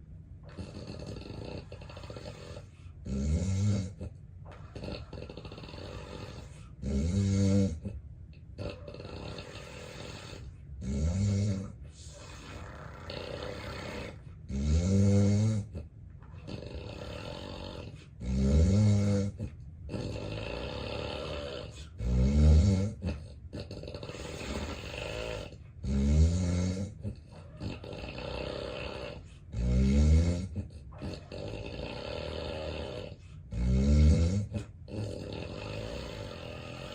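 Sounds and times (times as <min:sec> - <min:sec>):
quiet breathing: 0:00.0 - 0:04.1, 0:05.3 - 0:19.6, 0:21.2 - 0:23.3, 0:28.6 - 0:30.9, 0:32.3 - 0:36.9
man snoring heavily: 0:00.5 - 0:04.0, 0:04.8 - 0:07.9, 0:08.6 - 0:15.7, 0:16.5 - 0:27.0, 0:27.7 - 0:30.6, 0:31.3 - 0:36.9.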